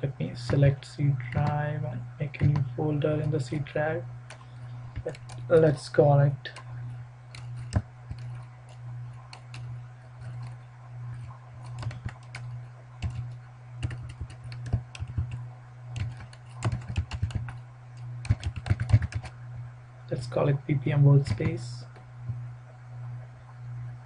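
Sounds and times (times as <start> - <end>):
steady low hum: 0.0 - 24.0
typing on a computer keyboard: 7.3 - 10.6, 11.2 - 15.4, 16.0 - 19.3.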